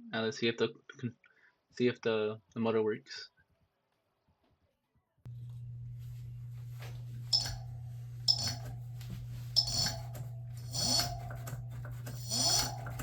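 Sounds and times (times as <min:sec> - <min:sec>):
electric motor humming: 0:05.3 - 0:13.0
wheel scraping squeak: 0:10.7 - 0:11.2, 0:12.1 - 0:13.0.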